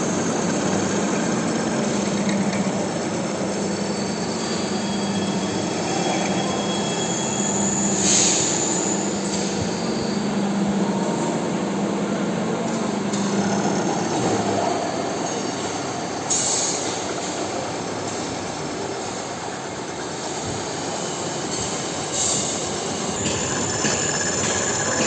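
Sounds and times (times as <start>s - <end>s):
metal lathe cutting: 0.0s - 10.8s, 21.0s - 25.0s.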